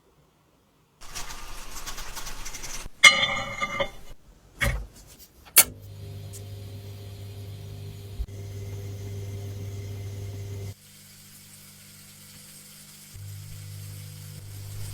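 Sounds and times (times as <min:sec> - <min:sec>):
metal scraping: 0:01.0 - 0:06.5
low steady hum: 0:05.6 - 0:10.8.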